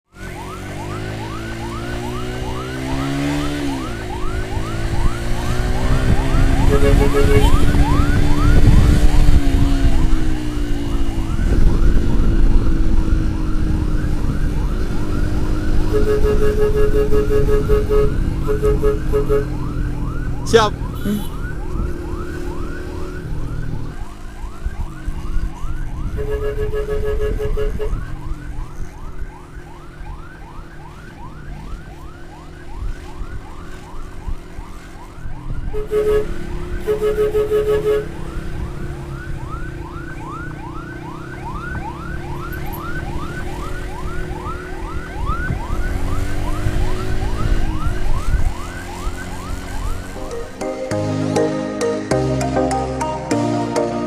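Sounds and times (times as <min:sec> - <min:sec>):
traffic and wind rumble: 0:00.1 - 0:51.0
siren yelping: 0:00.1 - 0:54.0
pulsing steady tone: 0:03.6 - 0:08.6, 0:15.0 - 0:19.7.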